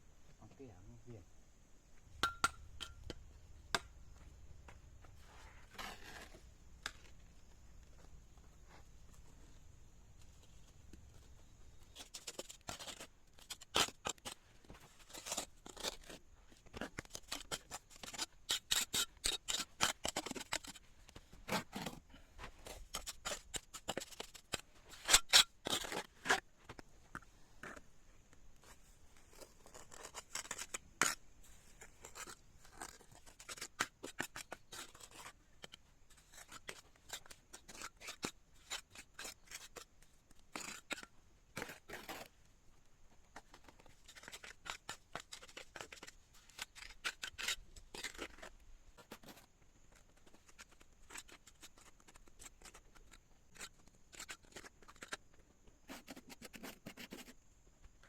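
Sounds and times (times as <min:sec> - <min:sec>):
sharp clicks and scrapes: 0:11.9 - 0:42.4, 0:43.2 - 0:58.0.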